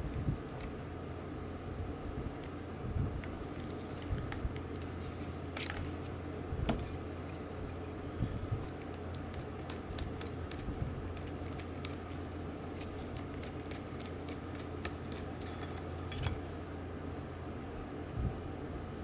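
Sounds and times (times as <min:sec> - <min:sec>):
high metal ring: 0:15.4 - 0:16.6.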